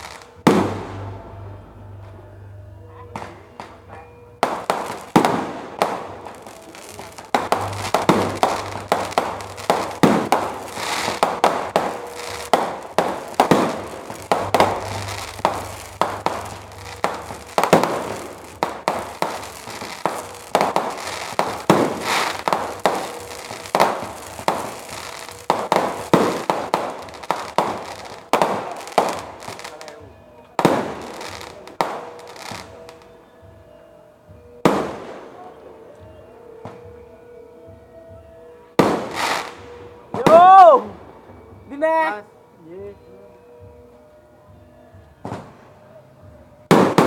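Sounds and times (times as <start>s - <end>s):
fireworks bangs and crackles: 0.0s - 2.1s, 3.1s - 33.1s, 34.6s - 35.6s, 38.7s - 41.6s, 45.2s - 45.7s, 46.6s - 47.0s.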